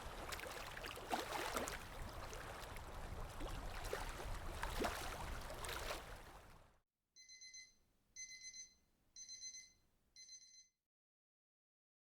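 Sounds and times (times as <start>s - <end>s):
lapping water: 0.0s - 6.5s
wind: 0.0s - 6.7s
digital watch alarm beeps: 7.2s - 10.7s.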